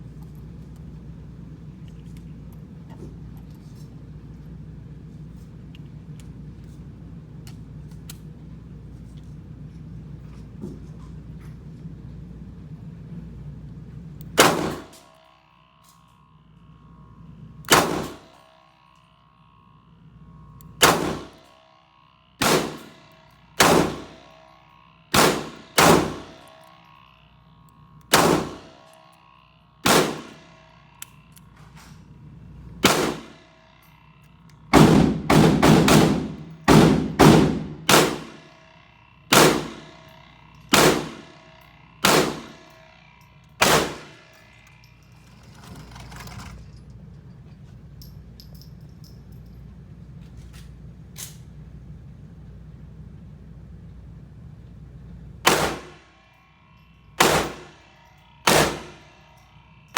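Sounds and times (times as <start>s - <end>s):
gunshots with ringing echo: 14.4s - 15.0s, 17.7s - 18.3s, 20.8s - 21.4s, 22.4s - 23.0s, 23.6s - 24.3s, 25.1s - 26.4s, 28.1s - 28.8s, 29.8s - 30.5s, 32.8s - 33.4s, 34.7s - 38.5s, 39.3s - 40.0s, 40.7s - 41.4s, 42.0s - 42.6s, 43.6s - 44.2s, 55.4s - 56.0s, 57.2s - 57.8s, 58.4s - 59.1s.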